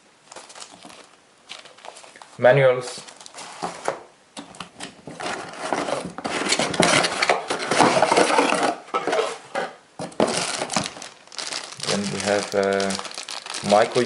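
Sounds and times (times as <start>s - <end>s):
packaging rustling: 0.3s - 2.4s, 3.0s - 3.9s, 10.1s - 14.0s.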